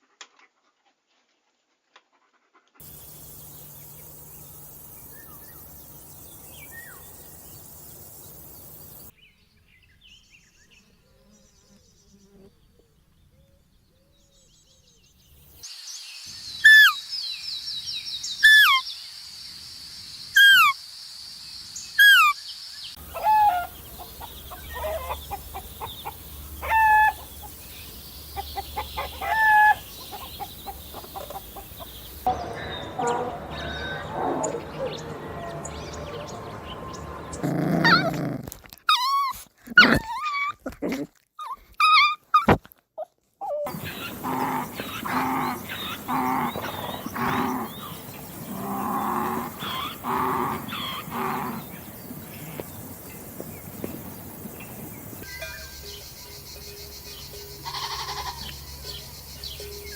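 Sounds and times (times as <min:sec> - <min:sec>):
birds calling: 0:02.8 - 0:09.1, 0:21.9 - 0:38.5, 0:43.6 - 0:59.9
steady high buzz: 0:02.8 - 0:09.1.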